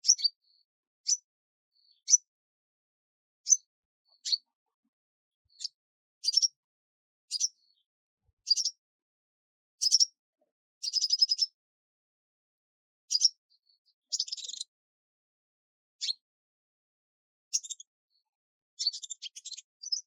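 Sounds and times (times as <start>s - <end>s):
small bird chirping: 0.0s - 2.4s, 3.4s - 6.6s, 7.3s - 8.9s, 9.8s - 10.2s, 10.8s - 11.6s, 13.1s - 14.8s, 16.0s - 16.3s, 17.5s - 20.0s.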